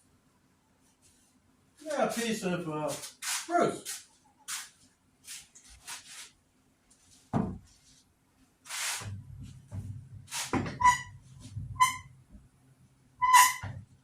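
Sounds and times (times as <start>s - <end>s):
rustling scrape: 2.9s - 8.1s
low rubbing and shuffling: 8.7s - 12.0s.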